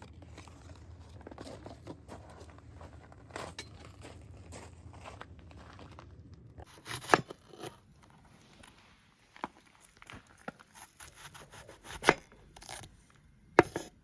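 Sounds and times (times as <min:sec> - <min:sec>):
rustling crinkling handling noise: 0:00.0 - 0:06.4.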